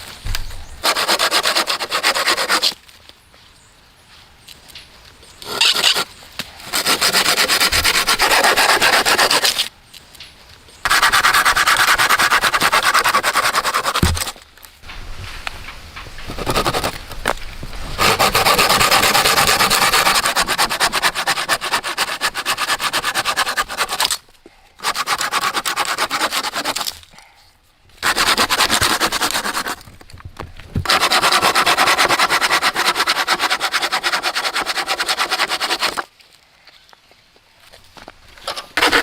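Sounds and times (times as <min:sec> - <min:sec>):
hand tool rasping on wood: 0:00.8 - 0:02.8, 0:05.4 - 0:09.7, 0:10.9 - 0:14.3, 0:16.3 - 0:17.0, 0:18.0 - 0:24.2, 0:24.8 - 0:26.9, 0:28.0 - 0:29.8, 0:30.8 - 0:36.1, 0:38.8 - 0:39.0.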